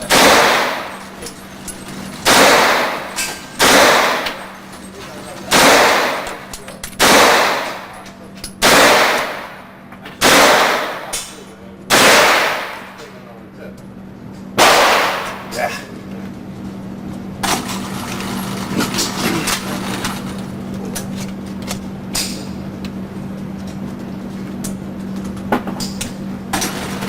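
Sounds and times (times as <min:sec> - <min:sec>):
gunshots with long echo: 0:00.0 - 0:01.3, 0:02.2 - 0:04.6, 0:05.5 - 0:08.0, 0:08.6 - 0:11.2, 0:11.9 - 0:13.0, 0:14.6 - 0:15.5.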